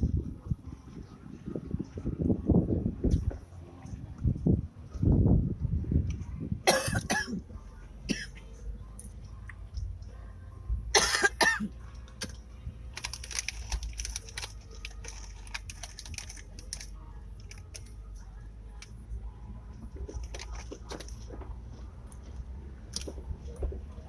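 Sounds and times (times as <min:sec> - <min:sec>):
steady low rumble: 0:00.0 - 0:24.0
loud cough-like vocal sound: 0:06.7 - 0:07.4, 0:08.1 - 0:08.4, 0:10.9 - 0:11.7.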